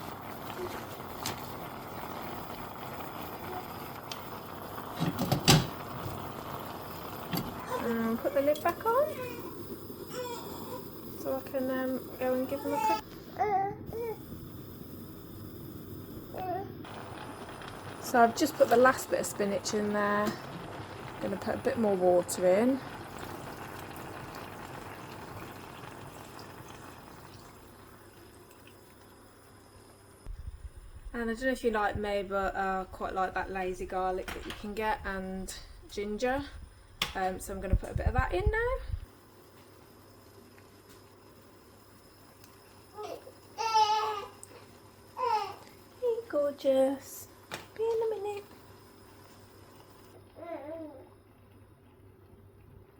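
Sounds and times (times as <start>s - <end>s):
water pouring into pan: 0.0s - 13.0s, 14.4s - 30.0s
pot hissing on the hob: 0.0s - 50.3s.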